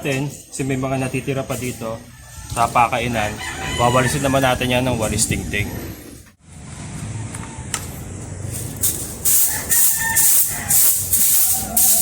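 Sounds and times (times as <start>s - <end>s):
stiff broom sweeping: 8.4s - 12.0s.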